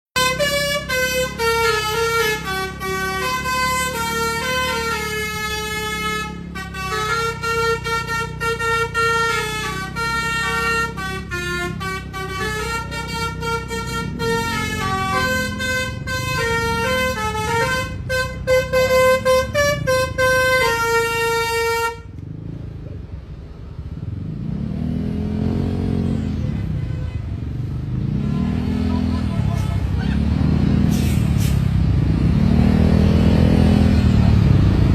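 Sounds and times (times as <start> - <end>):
multi-tone bus horn tune: 0.2 - 22.4, 26.0 - 30.2
vehicle engine noise: 0.2 - 34.9.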